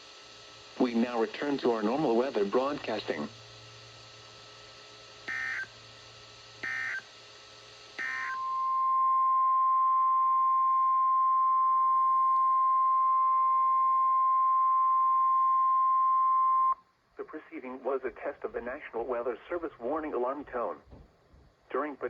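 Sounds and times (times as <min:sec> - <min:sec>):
steady warning alarm tone: 0:05.2 - 0:07.3, 0:07.9 - 0:16.8
digital header bursts: 0:05.3 - 0:05.7, 0:06.6 - 0:07.1, 0:08.0 - 0:08.4.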